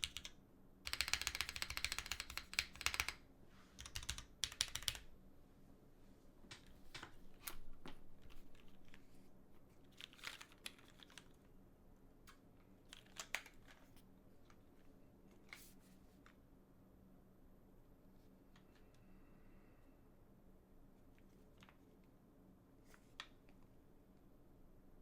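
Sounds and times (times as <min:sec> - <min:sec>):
keyboard key presses: 0:00.0 - 0:03.2, 0:03.8 - 0:05.0
faint steady hum: 0:00.0 - 0:25.0.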